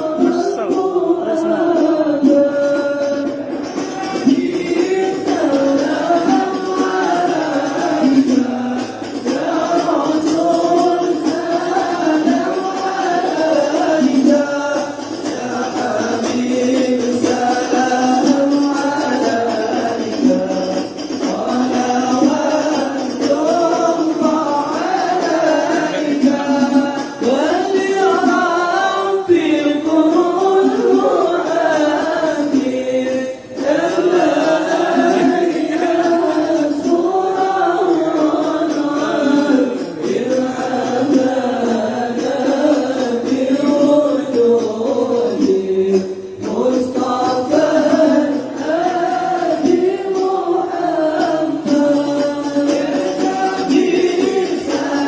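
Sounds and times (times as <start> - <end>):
group singing devotional chant: 0.0 - 55.0.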